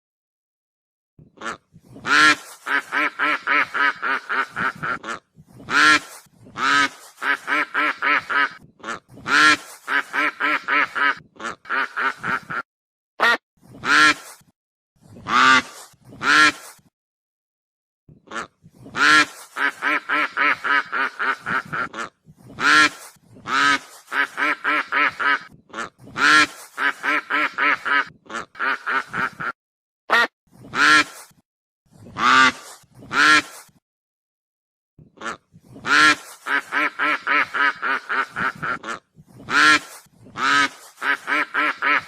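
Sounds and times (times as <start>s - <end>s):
geese honking: 1.4s - 12.6s, 19.0s - 29.4s, 35.2s - 42.0s.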